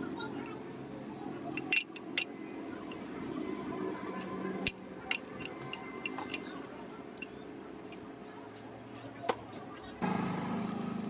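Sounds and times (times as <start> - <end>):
metallic clicks and clinks: 1.5 - 2.3, 4.6 - 8.1.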